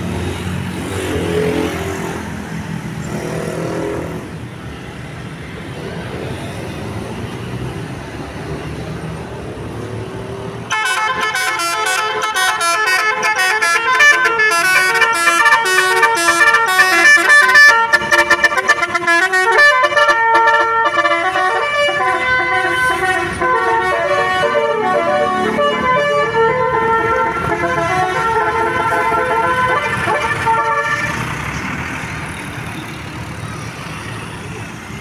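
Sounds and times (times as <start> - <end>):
bus engine running: 2.2 - 35.0
multi-tone bus horn tune: 10.7 - 31.4.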